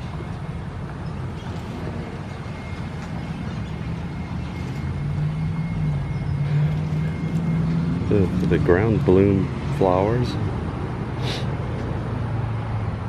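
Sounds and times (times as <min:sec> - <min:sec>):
low hum: 0:00.0 - 0:09.7
road traffic rumble: 0:00.0 - 0:13.0.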